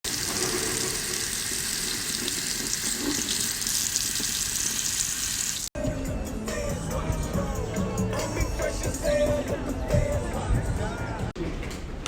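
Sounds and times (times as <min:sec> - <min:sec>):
running water: 0:00.1 - 0:05.7
street music: 0:05.8 - 0:11.4.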